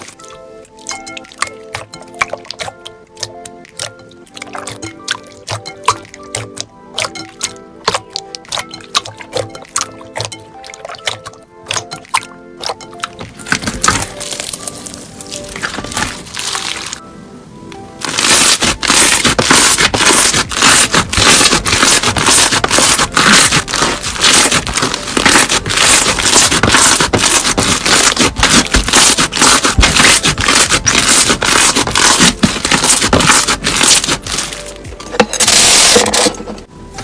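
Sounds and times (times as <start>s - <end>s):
crunchy slime being squeezed: 13.4s - 17.0s, 18.0s - 34.6s.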